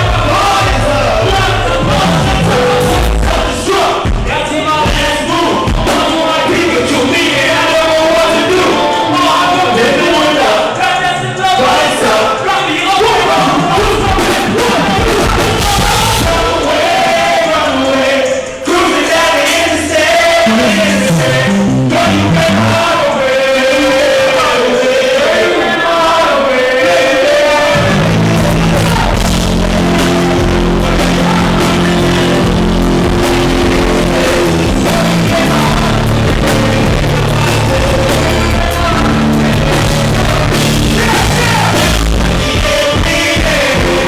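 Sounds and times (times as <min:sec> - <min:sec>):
bass: 0:00.0 - 0:05.1, 0:13.8 - 0:17.0, 0:19.8 - 0:23.1, 0:27.7 - 0:44.0
live band with vocals: 0:00.0 - 0:44.0.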